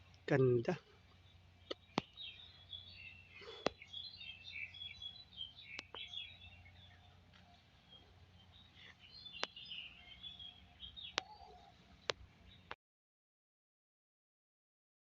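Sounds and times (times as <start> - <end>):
small birds chirping: 0.0 - 12.8
sharp clicks: 5.7 - 6.0, 9.4 - 9.6.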